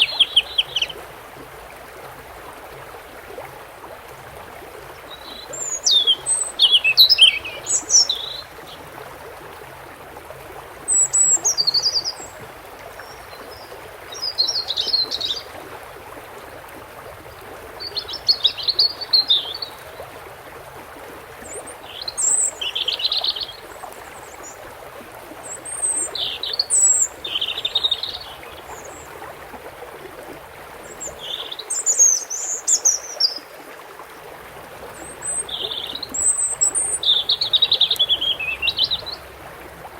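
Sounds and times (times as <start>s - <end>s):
goldfinch twittering: 0.0s - 1.0s, 5.1s - 8.8s, 10.9s - 12.4s, 17.8s - 20.0s, 25.4s - 29.1s, 30.9s - 33.4s, 35.0s - 39.3s.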